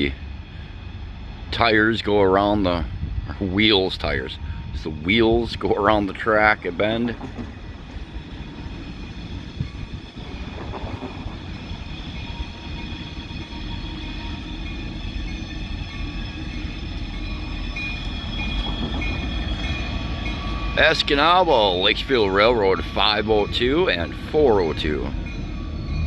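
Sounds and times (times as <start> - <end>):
locomotive rumble: 0.0 - 26.0
train wheels screeching: 0.0 - 26.0.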